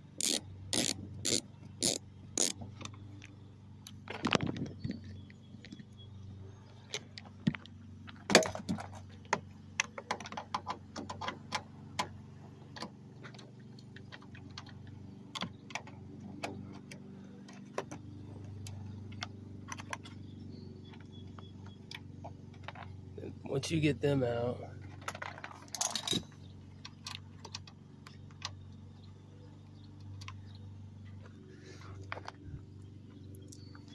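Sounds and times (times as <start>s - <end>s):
socket ratchet clicking: 0.2s - 2.6s.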